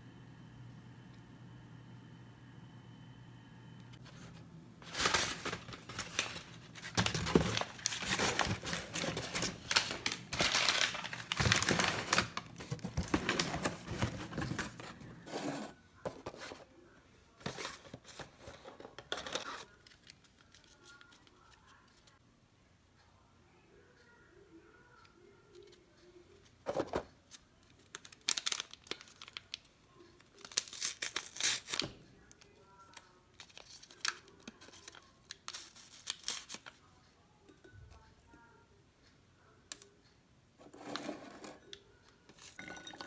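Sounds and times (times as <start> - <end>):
packaging crinkling and tearing: 4.8 - 15.1, 27.8 - 29.7, 30.3 - 31.9, 33.4 - 36.8.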